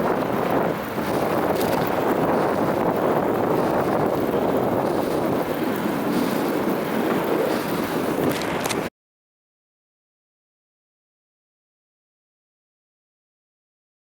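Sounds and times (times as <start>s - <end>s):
wind buffeting microphone: 0.0s - 8.9s.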